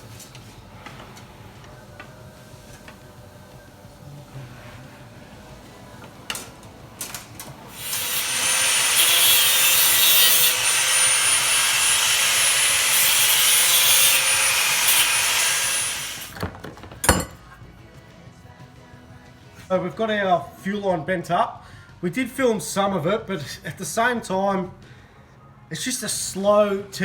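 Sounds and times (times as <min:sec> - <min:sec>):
tool scraping on metal: 0:07.7 - 0:16.4.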